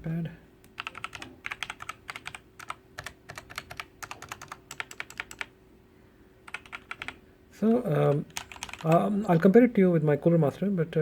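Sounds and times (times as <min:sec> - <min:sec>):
mechanical keyboard clicks: 0:00.8 - 0:05.5, 0:06.5 - 0:07.2, 0:08.1 - 0:09.0.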